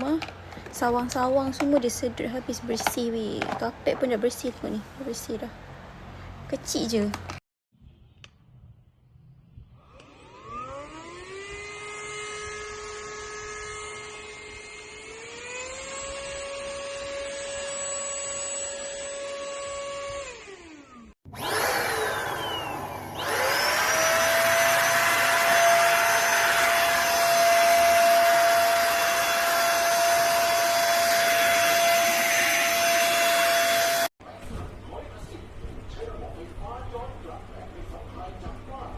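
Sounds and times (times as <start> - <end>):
vacuum cleaner motor whining: 9.8 - 34.1.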